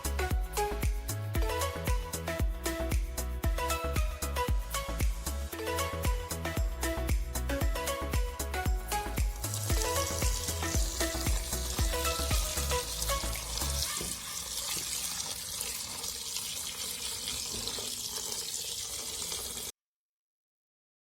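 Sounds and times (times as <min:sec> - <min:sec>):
background music with bass line: 0:00.0 - 0:14.0
food sizzling in hot oil: 0:09.4 - 0:19.7.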